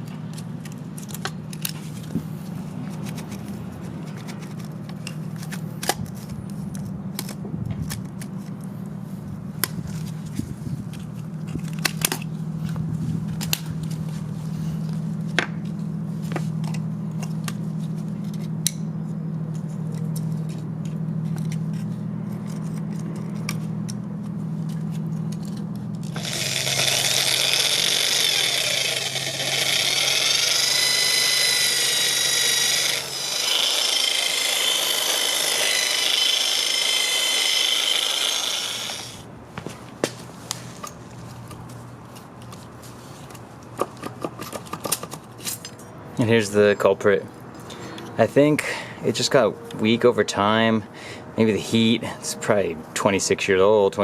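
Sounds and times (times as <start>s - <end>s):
power tool high-pitched whine: 26.1s - 39.3s.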